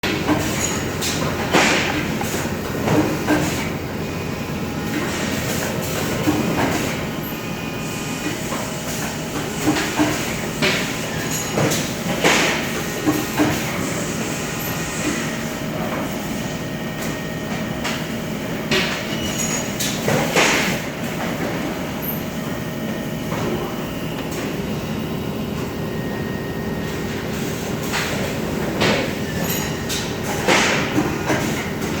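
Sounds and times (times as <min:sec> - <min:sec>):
machine rumbling: 0:00.0 - 0:06.7.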